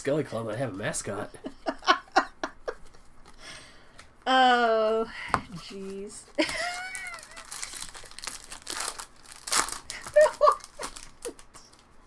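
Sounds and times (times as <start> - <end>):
foil wrappers crinkling: 5.6 - 12.0.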